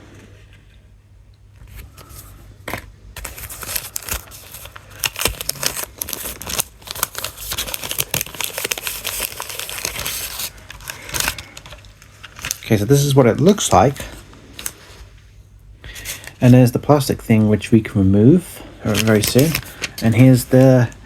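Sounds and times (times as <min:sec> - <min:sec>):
plastic packaging crinkling: 0:01.7 - 0:15.0, 0:18.8 - 0:21.0.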